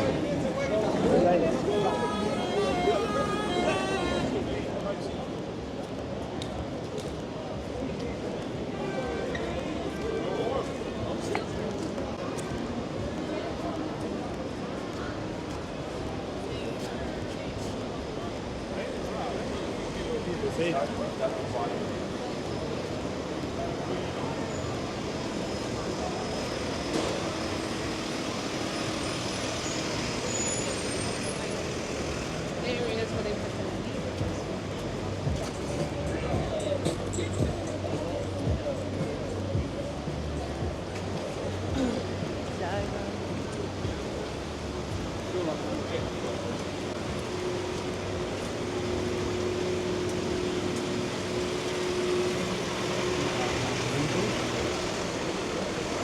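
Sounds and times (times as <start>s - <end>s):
heavy vehicle engine humming: 0.0s - 5.8s, 8.5s - 56.0s
traffic on wet road: 0.0s - 56.0s
rising engine note: 1.3s - 4.8s
rain and tyres hissing: 41.4s - 56.0s.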